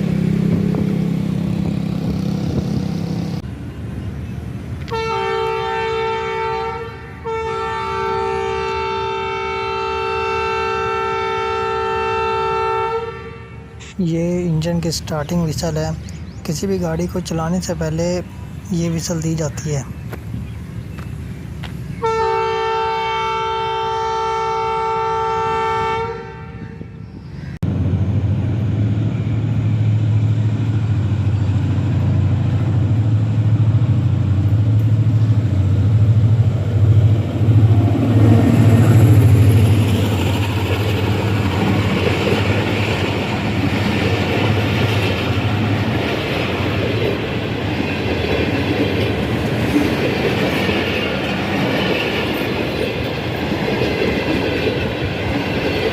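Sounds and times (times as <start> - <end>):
diesel engine drone: 0.0 - 7.4, 27.6 - 48.2
train rumbling and clattering past: 0.0 - 55.9
locomotive horn chord: 4.9 - 13.9, 22.0 - 27.0.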